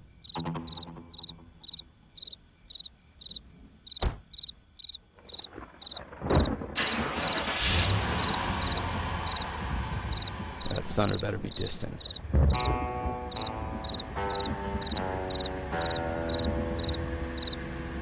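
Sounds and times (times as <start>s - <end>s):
crickets chirping: 0.0s - 17.7s
thump: 4.0s - 4.3s, 12.3s - 12.6s
rushing noise with low hum: 7.7s - 11.2s.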